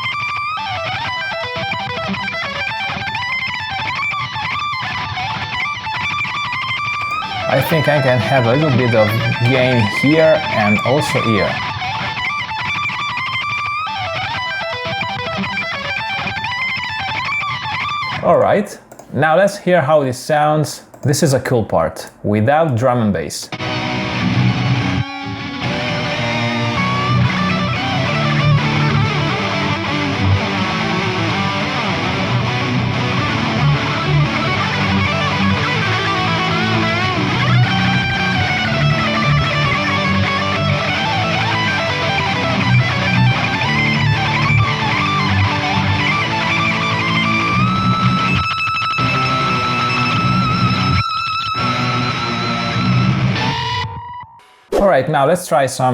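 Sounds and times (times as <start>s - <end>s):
distorted electric guitar melody: 7.0s - 19.1s, 23.5s - 54.8s.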